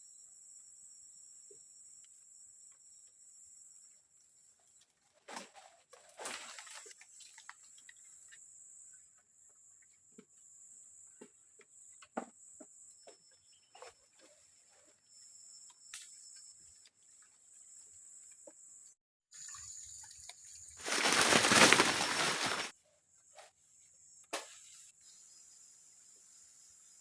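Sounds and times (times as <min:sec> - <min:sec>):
high insect buzz: 0:15.0 - 0:22.8, 0:24.0 - 0:27.0.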